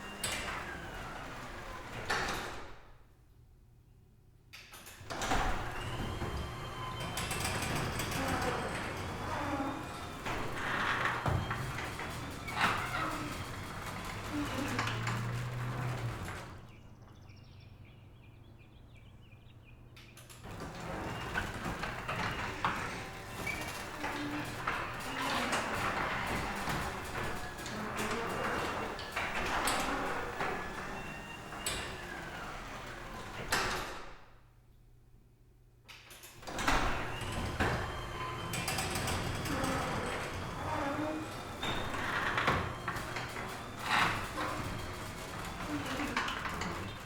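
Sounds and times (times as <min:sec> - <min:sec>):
garage door opener motor hum: 0:00.0 - 0:02.9, 0:04.7 - 0:17.7, 0:19.9 - 0:34.4, 0:35.9 - 0:47.0
garage door rattling: 0:00.0 - 0:03.0, 0:04.8 - 0:17.2, 0:20.2 - 0:34.4, 0:36.1 - 0:47.0
faint birdsong chirps: 0:16.7 - 0:20.3.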